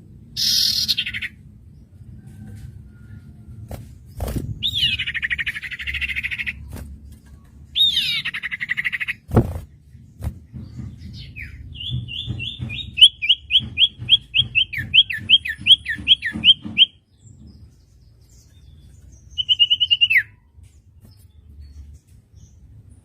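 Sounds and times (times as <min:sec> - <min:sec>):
bird trill: 0:00.4 - 0:01.4, 0:04.6 - 0:06.7, 0:07.7 - 0:09.3, 0:11.0 - 0:17.0, 0:18.4 - 0:20.5.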